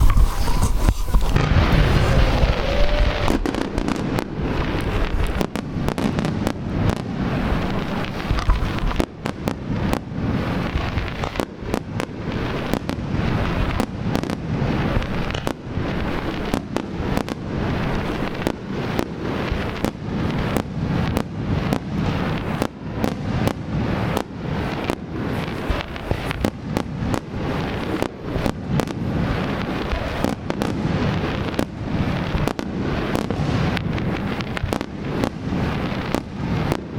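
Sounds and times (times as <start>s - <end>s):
firework whistle gliding up: 0.0s - 5.5s
fireworks booming and crackling: 0.0s - 36.9s.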